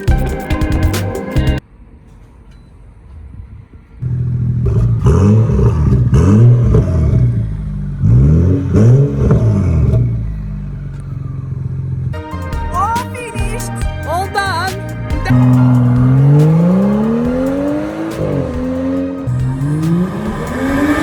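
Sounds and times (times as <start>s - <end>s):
car engine revving and idling: 4.0s - 12.2s, 14.8s - 21.0s.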